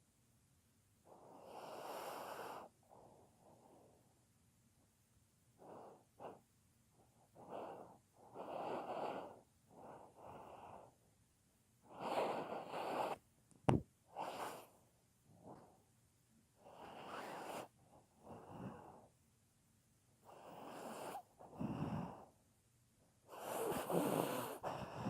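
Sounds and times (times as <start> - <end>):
dog snoring: 1.1 - 2.7, 5.6 - 6.4, 7.3 - 10.9, 11.9 - 13.2, 16.6 - 19.1, 20.2 - 22.3, 23.3 - 25.0.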